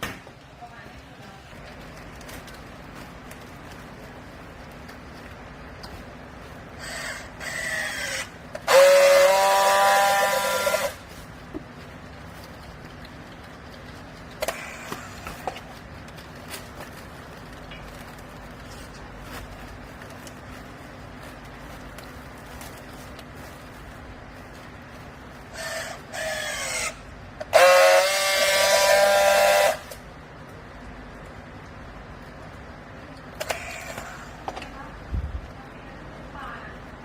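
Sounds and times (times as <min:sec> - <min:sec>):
baling press machinery humming: 0:01.7 - 0:31.2.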